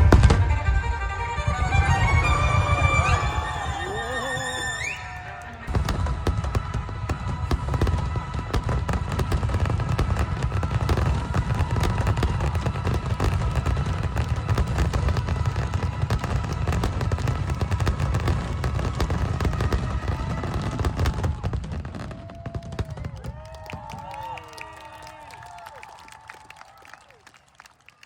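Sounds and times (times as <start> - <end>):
fireworks bursting and crackling: 0.0 - 24.8.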